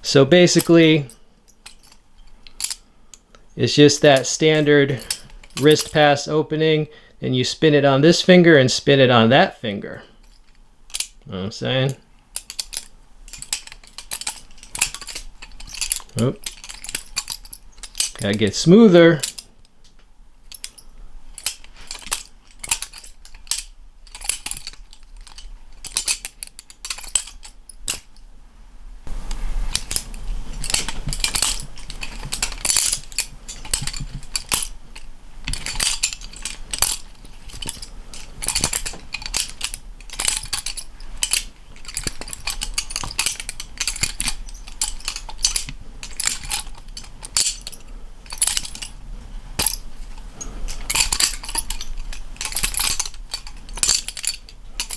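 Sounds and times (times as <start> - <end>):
metal knife handles clacking: 0.0 - 6.4, 9.9 - 28.2, 29.0 - 54.9.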